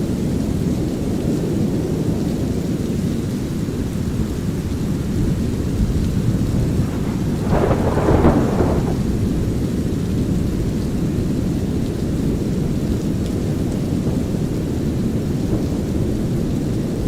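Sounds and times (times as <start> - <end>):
light rain: 0.0 - 17.0
thunder burst: 4.9 - 10.1
deep rushing noise: 5.0 - 9.6.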